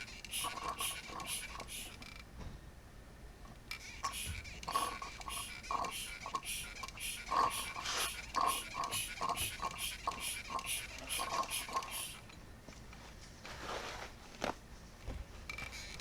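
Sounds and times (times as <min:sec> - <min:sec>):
hand vacuum pump slurping: 0:00.0 - 0:02.0, 0:03.8 - 0:12.3.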